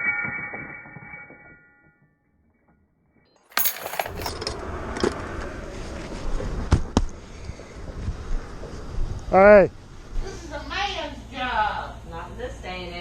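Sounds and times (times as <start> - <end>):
metallic clinking and jingling: 3.5 - 4.4.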